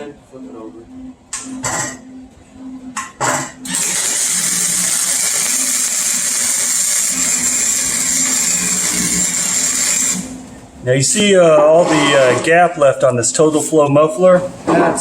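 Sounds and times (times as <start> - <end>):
angle grinder cutting metal: 3.7 - 10.3.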